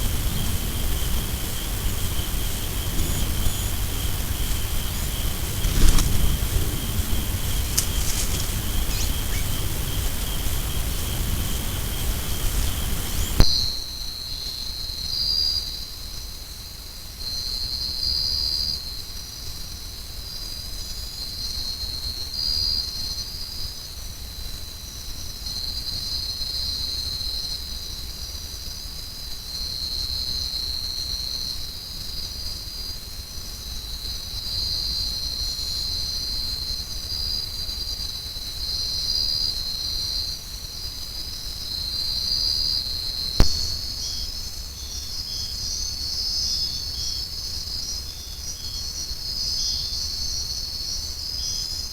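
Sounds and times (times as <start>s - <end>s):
low rumble: 0.0s - 13.5s
insect chorus shrilling: 0.0s - 13.8s, 43.4s - 51.9s
sharp click: 43.4s - 44.1s.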